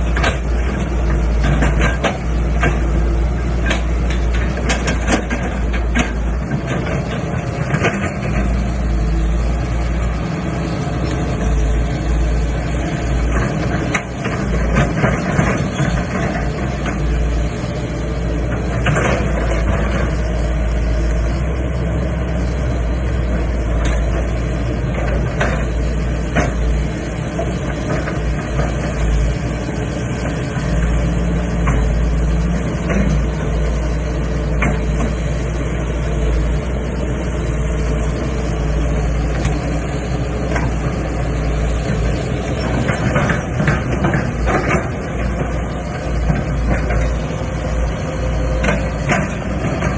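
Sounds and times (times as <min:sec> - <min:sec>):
excavator diesel engine running: 0:00.0 - 0:49.9.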